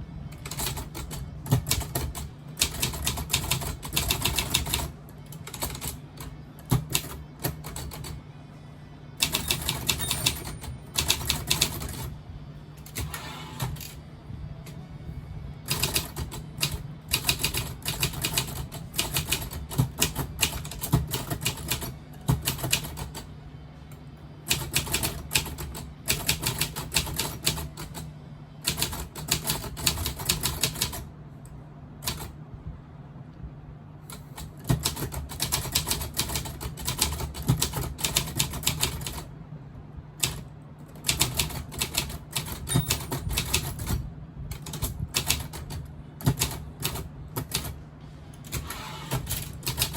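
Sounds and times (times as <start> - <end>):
manual typewriter key strikes: 0.4 - 8.2, 9.2 - 12.1, 15.7 - 23.2, 40.2 - 47.8, 48.4 - 49.9.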